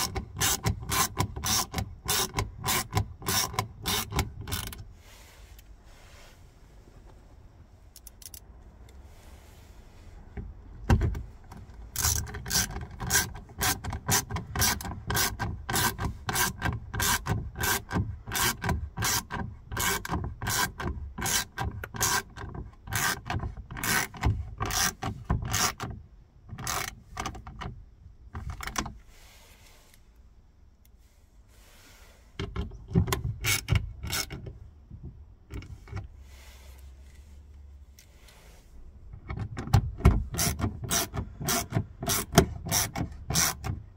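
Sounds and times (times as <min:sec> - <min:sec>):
rasping hand tool strokes: 0:00.0 - 0:05.4, 0:12.0 - 0:24.1, 0:40.4 - 0:43.7.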